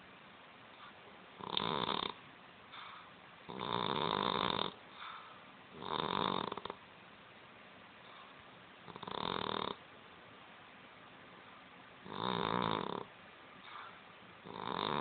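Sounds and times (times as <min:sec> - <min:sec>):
faint cat breaths: 0:00.7 - 0:06.6, 0:13.6 - 0:15.0
cat snoring: 0:01.4 - 0:06.8, 0:08.8 - 0:09.8, 0:12.0 - 0:15.0.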